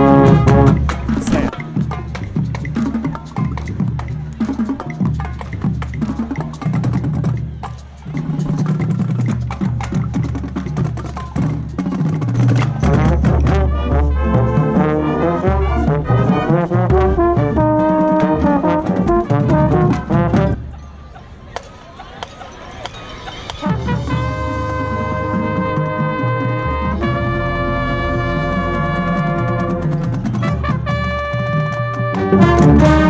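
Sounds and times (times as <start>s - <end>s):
brass held chords: 0.0s - 1.6s, 12.8s - 20.6s, 23.6s - 33.0s
drum and percussion strikes: 0.0s - 20.6s, 23.5s - 33.0s.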